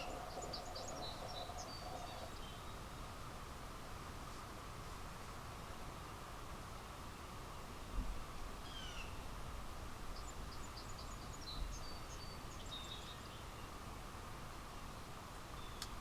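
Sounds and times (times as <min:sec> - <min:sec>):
songbirds chirping and trilling: 0:00.0 - 0:02.8.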